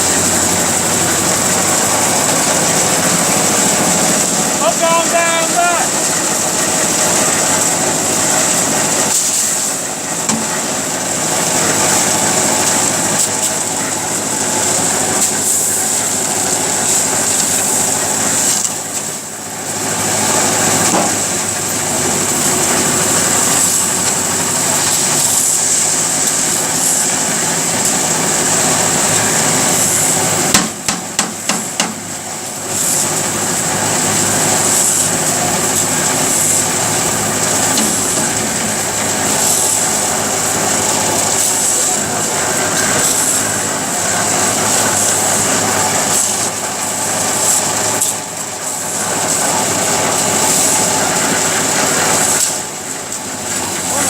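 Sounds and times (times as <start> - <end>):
concrete mixer running: 0.0 - 54.0
sharp knocks: 10.3 - 10.6, 30.5 - 32.0.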